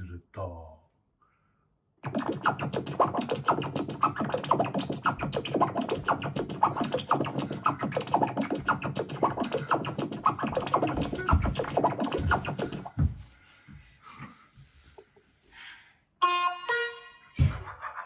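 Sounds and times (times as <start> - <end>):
squelchy bouncy electronic blips: 2.0 - 12.9.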